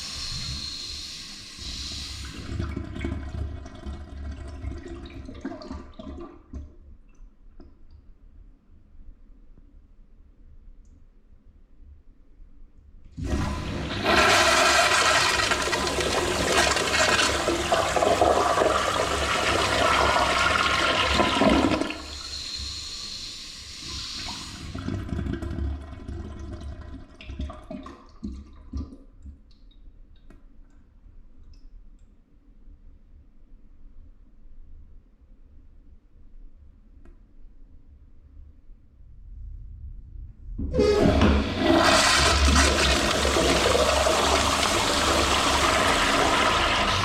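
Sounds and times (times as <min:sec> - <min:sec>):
toilet flushing: 0:00.0 - 0:06.6, 0:13.2 - 0:28.9, 0:40.6 - 0:47.0.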